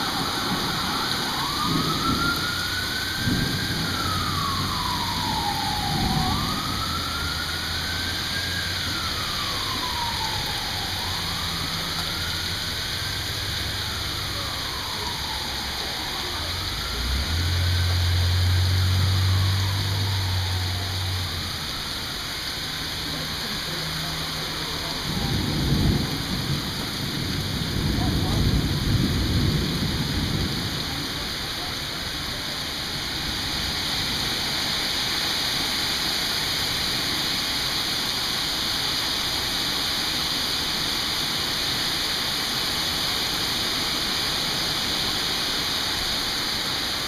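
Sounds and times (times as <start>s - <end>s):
siren wailing: 0.0s - 34.4s
rain hiss: 0.0s - 47.0s.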